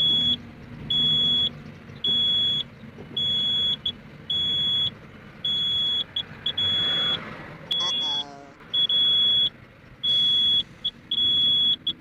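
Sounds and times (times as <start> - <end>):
warning buzzer beeping: 5.5 - 9.5.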